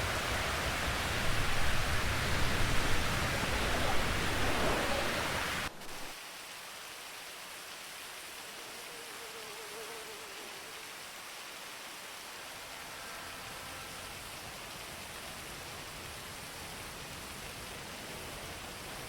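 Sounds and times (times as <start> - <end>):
heavy rain rushing: 0.0 - 9.4
steady rain hiss: 0.0 - 19.0.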